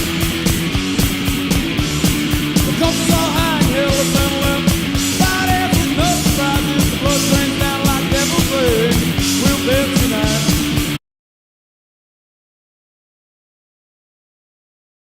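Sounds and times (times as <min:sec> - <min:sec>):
rock music with vocals: 0:00.0 - 0:11.0.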